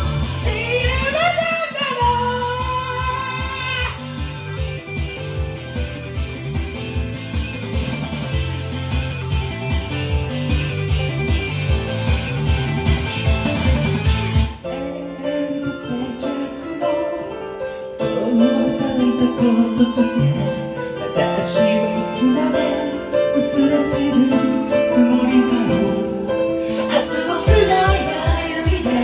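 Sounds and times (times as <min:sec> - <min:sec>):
heavy drums and guitar: 0:00.0 - 0:14.6
piano and keyboard chords: 0:00.0 - 0:29.0.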